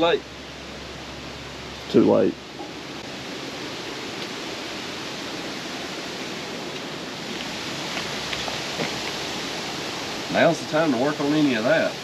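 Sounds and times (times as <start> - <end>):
rushing wind: 0.0 - 12.0.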